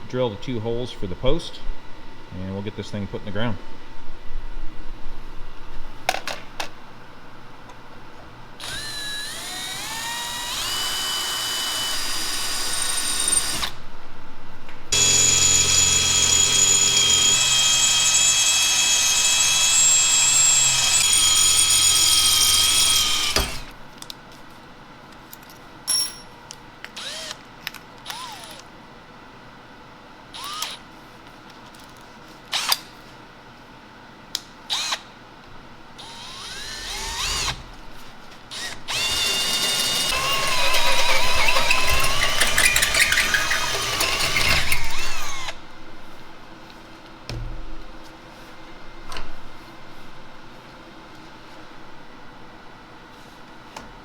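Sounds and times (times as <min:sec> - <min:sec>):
electric drill boring: 0:08.6 - 0:13.8, 0:14.9 - 0:23.8, 0:27.0 - 0:27.4, 0:28.1 - 0:28.6, 0:30.4 - 0:30.8, 0:36.0 - 0:37.6, 0:38.5 - 0:45.6.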